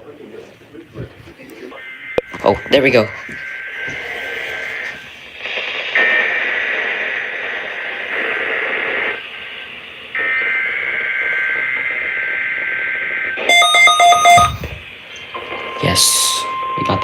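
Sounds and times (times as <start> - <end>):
radio static: 13.2 - 17.0
loud beeping alarm: 13.4 - 17.0.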